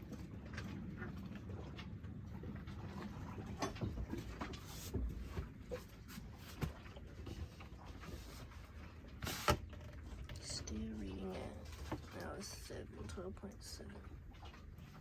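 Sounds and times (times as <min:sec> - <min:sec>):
low steady rumble: 0:00.0 - 0:15.0.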